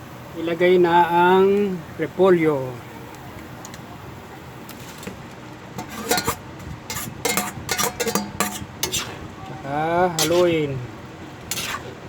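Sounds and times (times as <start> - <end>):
metal utensil clanking in pan: 5.8 - 9.2, 10.2 - 10.6, 11.5 - 11.9.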